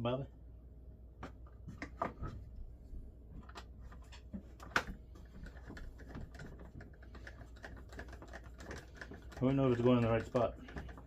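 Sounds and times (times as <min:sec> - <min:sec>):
hand tools clicking and knocking: 0:04.7 - 0:11.0.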